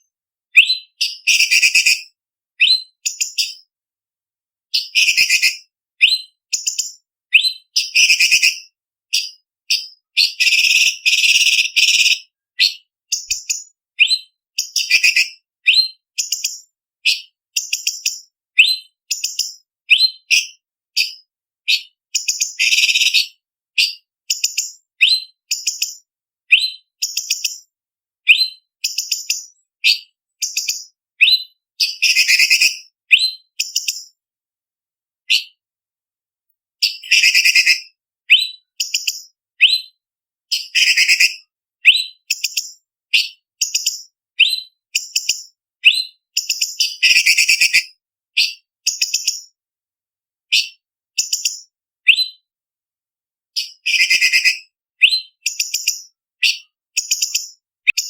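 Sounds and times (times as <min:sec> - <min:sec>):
bird whistling sharp notes: 0:02.6 - 0:03.4, 0:07.3 - 0:08.6, 0:29.8 - 0:33.4.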